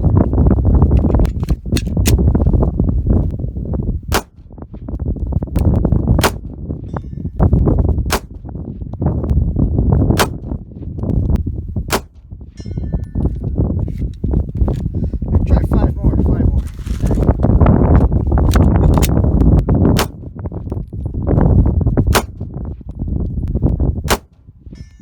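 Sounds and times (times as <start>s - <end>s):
wind rumble on microphone: 0.0s - 25.0s
revolver gunshots: 4.1s - 4.4s, 10.1s - 10.5s, 11.9s - 12.2s, 19.9s - 20.3s, 22.1s - 22.4s, 24.0s - 24.4s.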